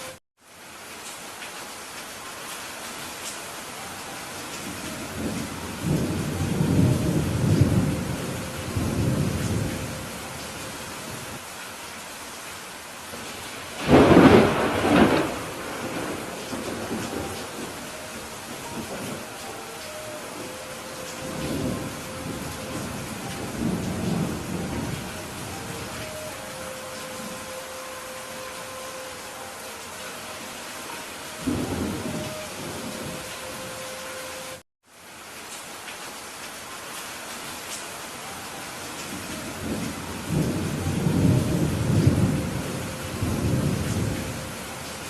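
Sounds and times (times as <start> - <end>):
heavy rain hiss: 0.0 - 45.0
thunder rumble: 4.7 - 11.4, 13.1 - 19.4, 20.0 - 27.9, 30.9 - 33.8, 39.1 - 44.6.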